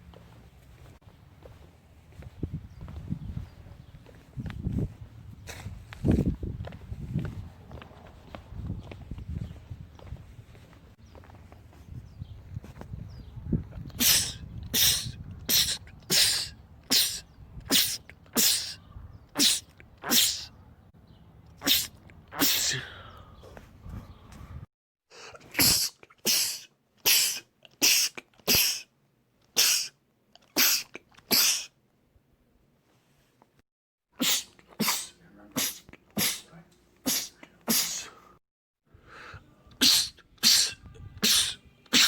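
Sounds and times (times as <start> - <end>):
man sneezing: 14.0 - 18.8, 19.4 - 20.5, 21.6 - 23.0, 25.2 - 28.9, 29.6 - 31.7, 34.2 - 38.2, 39.8 - 42.0.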